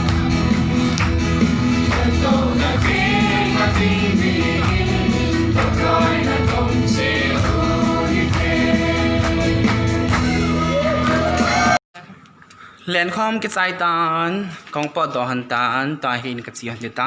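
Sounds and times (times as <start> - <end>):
gospel choir music with beat: 0.0 - 11.8.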